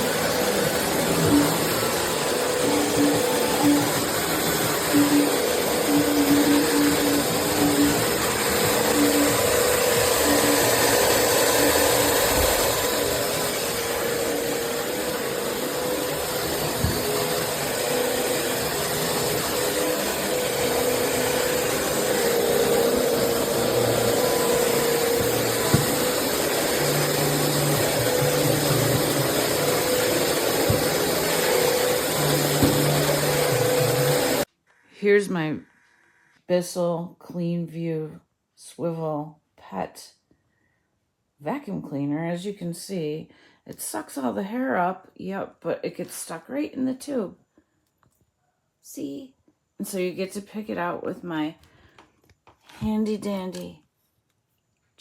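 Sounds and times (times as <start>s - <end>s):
vacuum cleaner running: 0.0s - 34.5s.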